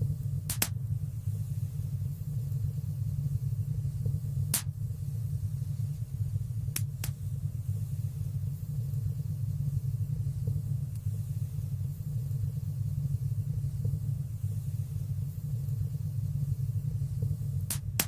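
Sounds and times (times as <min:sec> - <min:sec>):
fire rumbling in fireplace: 0:00.0 - 0:18.0
fire crackling and popping: 0:00.2 - 0:01.4, 0:02.5 - 0:05.1, 0:06.4 - 0:07.8, 0:15.6 - 0:18.0.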